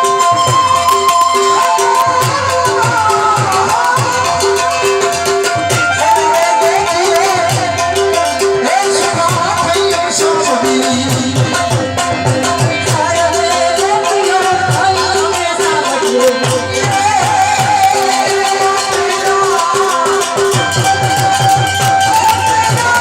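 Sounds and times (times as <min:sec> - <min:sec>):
fast drum beat: 0:00.0 - 0:23.0
folk music: 0:00.0 - 0:23.0.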